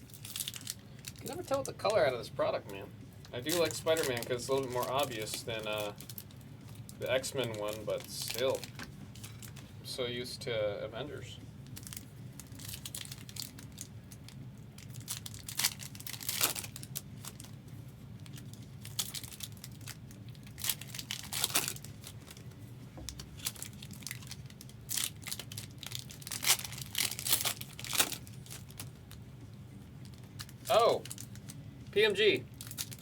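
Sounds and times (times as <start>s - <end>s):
card wrappers tearing and crinkling: 0.0s - 9.6s, 11.6s - 17.6s, 18.2s - 29.2s, 30.0s - 33.0s
steady low hum: 0.0s - 33.0s.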